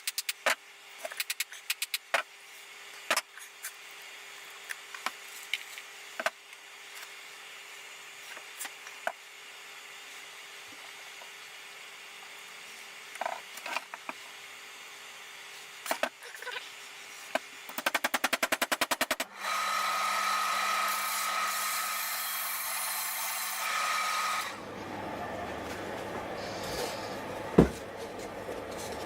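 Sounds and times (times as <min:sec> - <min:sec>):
knocks: 0:27.6 - 0:27.8.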